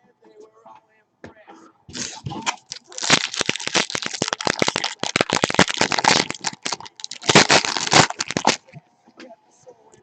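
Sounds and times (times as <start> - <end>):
foil wrapper crinkling and tearing: 1.9 - 8.6.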